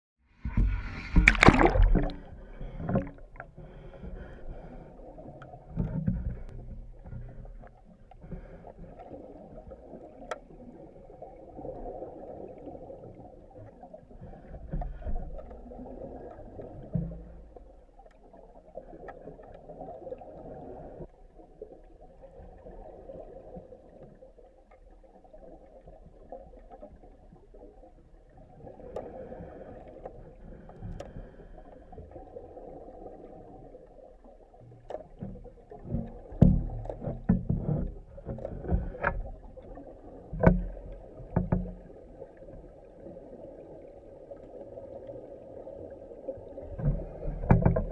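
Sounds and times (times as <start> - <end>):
muffled underwater wash: 0.2 - 47.9
dull underwater knocks: 0.4 - 4.7, 5.6 - 8.6, 16.6 - 17.7, 34.7 - 42.7, 46.6 - 47.9.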